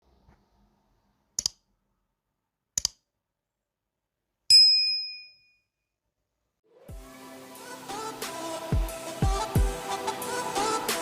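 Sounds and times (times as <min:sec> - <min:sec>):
bright metallic ding: 0:04.5 - 0:05.6.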